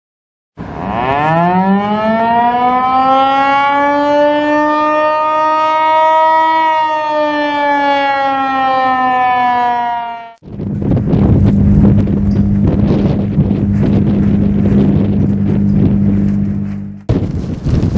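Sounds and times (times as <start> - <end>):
siren wailing: 0.6 - 10.6.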